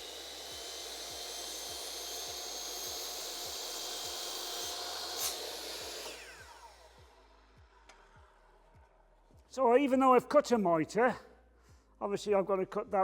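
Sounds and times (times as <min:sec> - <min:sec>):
power saw whining: 0:00.0 - 0:07.4.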